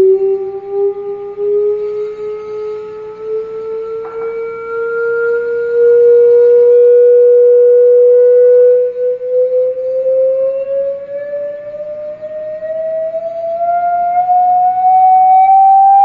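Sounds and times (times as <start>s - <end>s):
rising pure tone: 3.2s - 8.2s, 12.8s - 16.0s.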